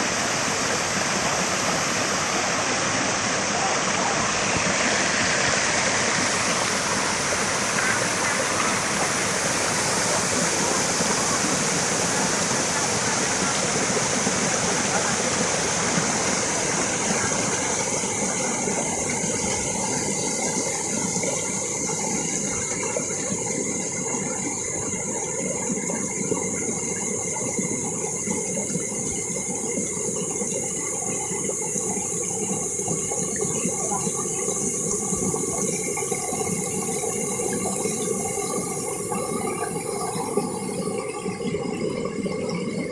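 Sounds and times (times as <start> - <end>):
waterfall rushing: 0.0 - 22.7.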